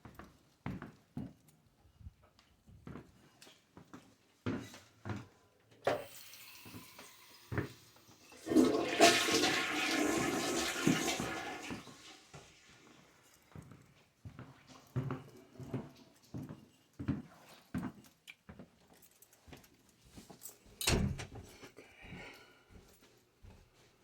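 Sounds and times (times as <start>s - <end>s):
toilet flushing: 5.8s - 12.5s.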